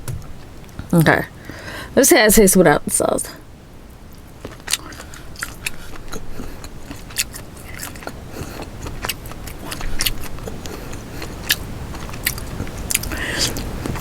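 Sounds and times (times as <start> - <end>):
chewing with mouth clicks: 4.1 - 14.0.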